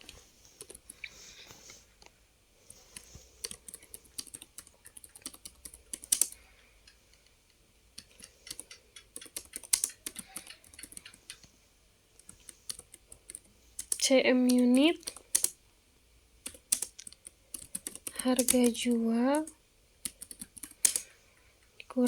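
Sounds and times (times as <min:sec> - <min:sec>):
computer keyboard typing: 0:00.6 - 0:01.0, 0:02.7 - 0:07.0, 0:08.0 - 0:11.5, 0:12.2 - 0:15.6, 0:16.4 - 0:21.1.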